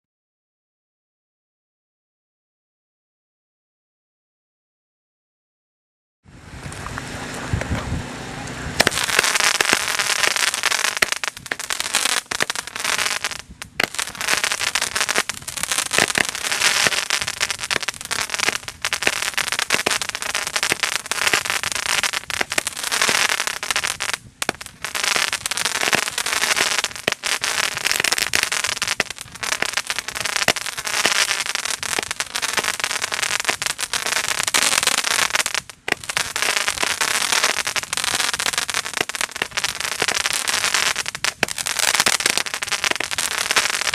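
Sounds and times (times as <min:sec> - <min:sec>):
fireworks crackling and popping: 0:06.5 - 0:43.9.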